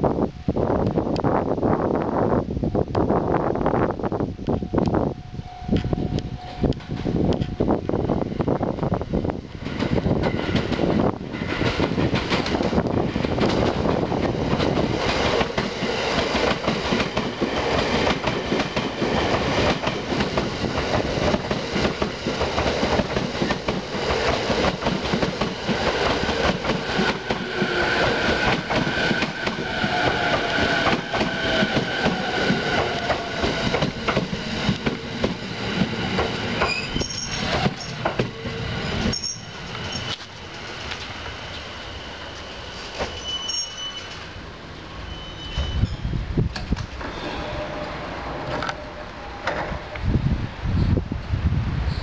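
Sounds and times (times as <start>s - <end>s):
train wheels clattering over rail joints: 9.6s - 41.1s
train brake squeals: 36.6s - 40.3s, 41.5s - 44.4s, 45.0s - 46.3s, 47.0s - 49.7s.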